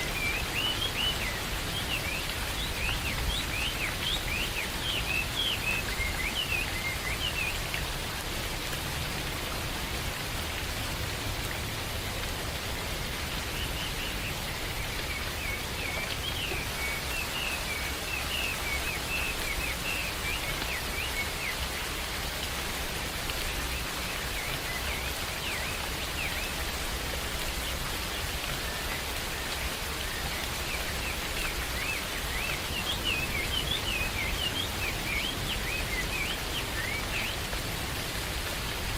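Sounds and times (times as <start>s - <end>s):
steady rain hiss: 0.0s - 38.9s.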